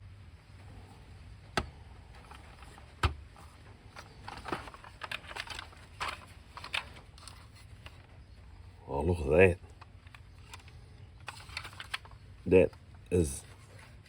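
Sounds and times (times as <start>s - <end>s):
plastic toy parts clicking: 9.8s - 12.2s.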